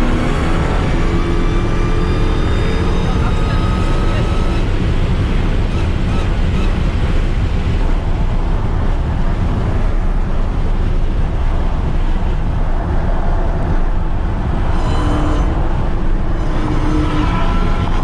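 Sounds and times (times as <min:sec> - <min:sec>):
low engine rumble: 0:00.0 - 0:18.0
tyres on wet road: 0:00.0 - 0:18.0
short pitched tone: 0:01.1 - 0:07.1.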